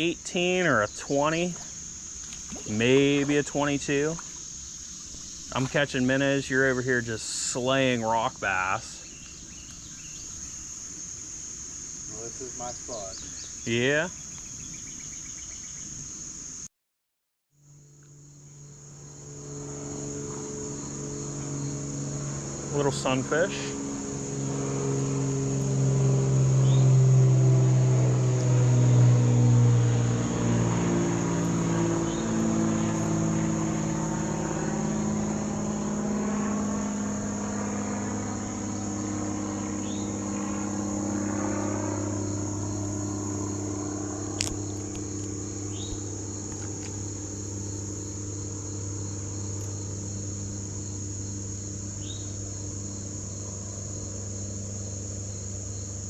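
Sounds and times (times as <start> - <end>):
vehicle passing by: 0.0 - 10.3, 12.0 - 14.1, 18.2 - 56.0
low engine hum: 0.0 - 15.9, 17.6 - 56.0
insects trilling: 0.0 - 16.7, 17.6 - 56.0.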